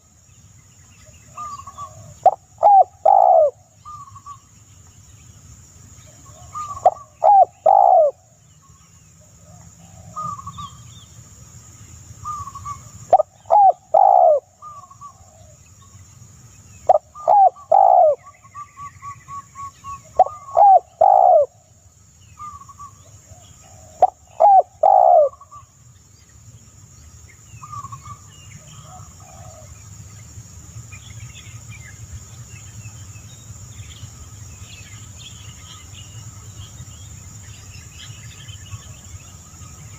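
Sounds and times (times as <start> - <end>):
high insect drone: 0.0 - 39.9
dove cooing: 1.3 - 4.4, 6.2 - 8.2, 12.2 - 15.6, 16.9 - 18.4, 20.0 - 21.6, 23.3 - 25.6, 27.6 - 29.8.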